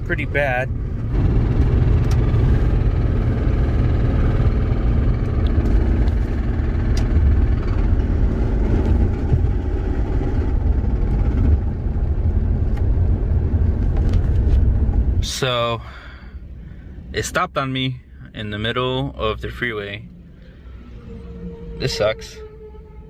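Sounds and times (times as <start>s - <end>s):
car engine rumbling with knock: 0.0s - 15.4s.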